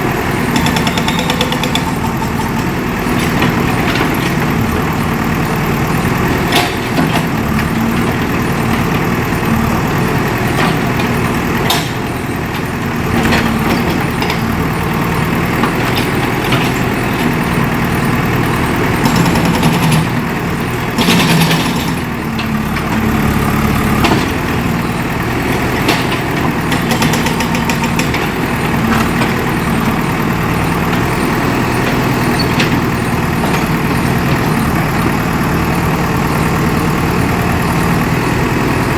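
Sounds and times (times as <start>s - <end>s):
diesel engine running: 0.0s - 38.9s
sharp metal knocks and clanks: 0.3s - 4.6s.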